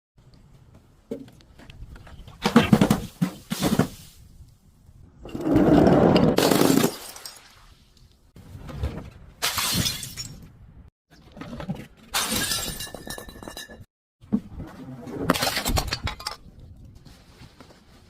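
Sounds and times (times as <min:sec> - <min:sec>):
glass shattering and crunching: 0:06.4 - 0:07.6, 0:09.4 - 0:10.5, 0:12.1 - 0:13.9.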